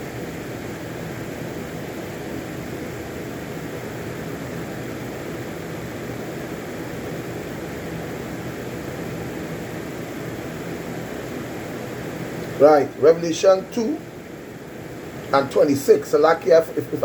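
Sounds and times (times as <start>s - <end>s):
faint low hum: 0.0s - 17.0s
steady hiss: 0.0s - 17.0s.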